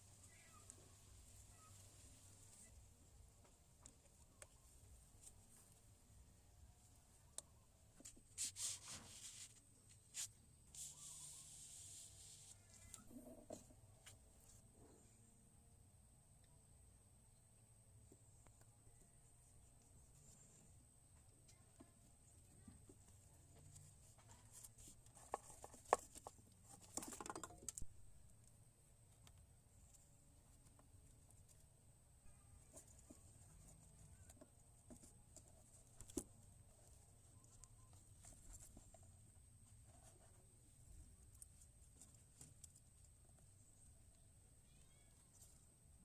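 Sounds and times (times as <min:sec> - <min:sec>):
short rubbing scrapes: 0:08.3 - 0:12.7
steady hiss: 0:08.3 - 0:12.9.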